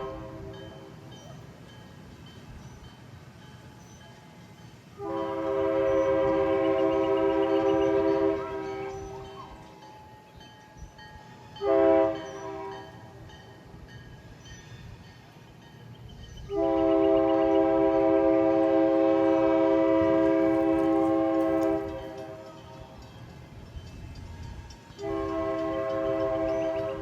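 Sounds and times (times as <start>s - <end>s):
locomotive chime horn blasts: 0.0s - 1.5s, 4.9s - 10.3s, 11.2s - 14.0s, 16.2s - 23.4s, 24.1s - 27.0s
low locomotive rumble: 0.0s - 27.0s.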